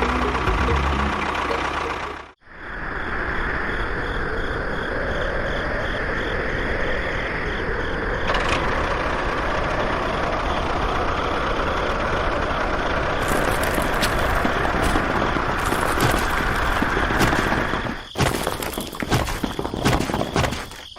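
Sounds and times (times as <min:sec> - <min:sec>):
small motor running: 0:13.2 - 0:17.8.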